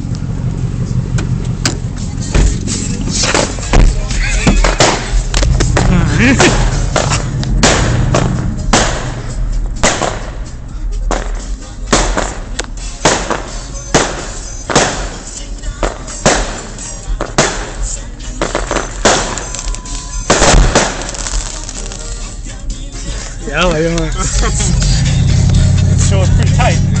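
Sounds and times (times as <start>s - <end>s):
fireworks bangs with echo: 3.8s - 10.5s, 11.1s - 22.1s.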